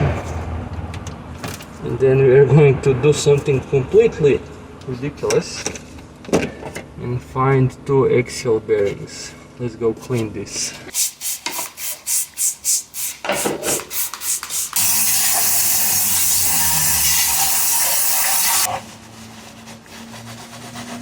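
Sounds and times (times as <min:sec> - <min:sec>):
loud spray hiss: 0:11.0 - 0:18.7
brush scrubbing strokes: 0:17.4 - 0:21.0.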